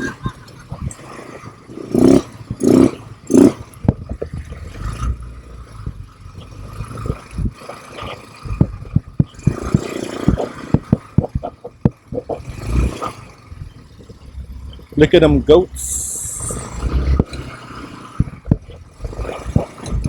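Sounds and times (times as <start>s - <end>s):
atv engine humming: 0.0s - 20.0s
sharp knocks and rattles: 0.2s - 15.4s, 16.7s - 20.0s
loud buffets: 8.3s - 20.0s.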